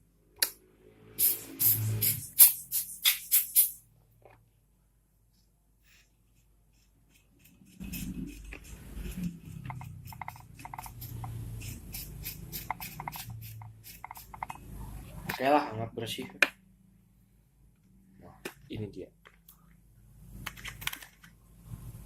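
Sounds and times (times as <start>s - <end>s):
low room noise: 0.0s - 22.0s
brushing inside laptop: 6.0s - 14.6s.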